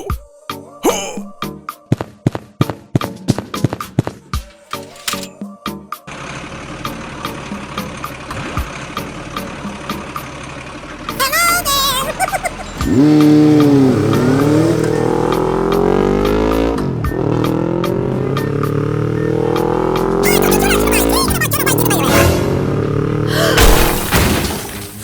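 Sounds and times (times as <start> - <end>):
engine running with ticking: 3.4 - 25.0
engine revving: 6.1 - 11.2, 12.1 - 25.0.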